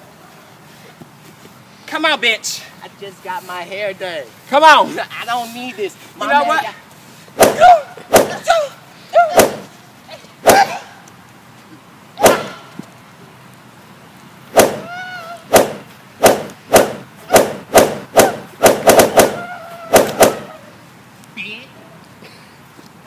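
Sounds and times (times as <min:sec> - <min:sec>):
slaps and thumps of blows: 0:07.4 - 0:08.5, 0:09.3 - 0:09.8, 0:10.4 - 0:10.8, 0:12.2 - 0:12.6, 0:14.5 - 0:14.9, 0:15.5 - 0:20.5
short cries: 0:07.4 - 0:11.0, 0:14.8 - 0:15.6, 0:18.2 - 0:20.8.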